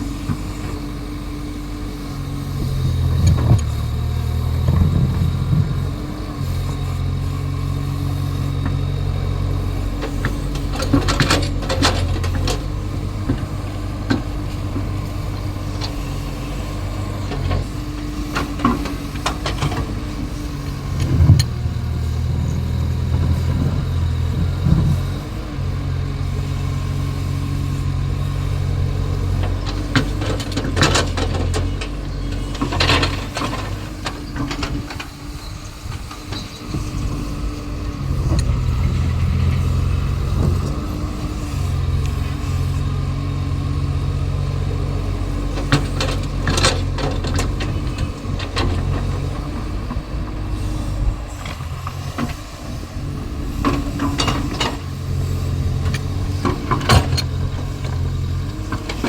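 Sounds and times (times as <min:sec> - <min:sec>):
excavator diesel engine running: 0:00.0 - 0:59.0
machine clanks and knocks: 0:55.9 - 0:58.0.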